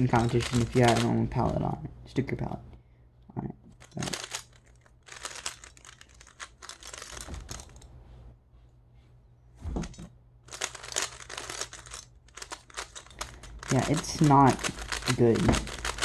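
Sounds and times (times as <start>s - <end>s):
plastic speed cube turning: 0.1s - 1.6s, 3.7s - 7.8s, 10.5s - 16.0s.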